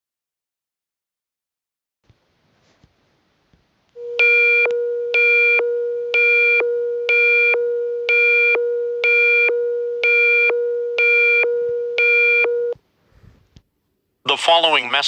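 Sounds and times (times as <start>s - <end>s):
pulsing buzzy high tone: 4.0s - 12.8s
steady low alert tone: 4.0s - 12.8s.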